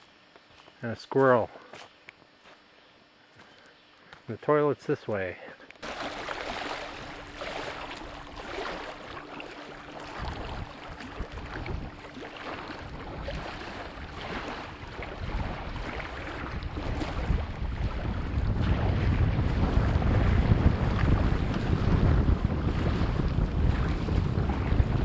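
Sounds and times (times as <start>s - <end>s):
wind buffeting microphone: 6.6s - 25.0s.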